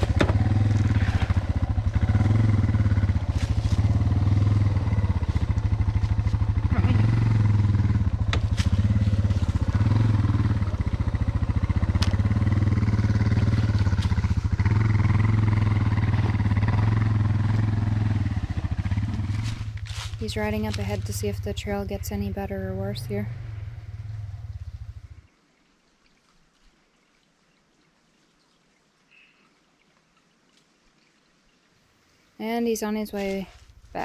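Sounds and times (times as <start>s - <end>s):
motorcycle engine running at low revs: 0.0s - 25.3s.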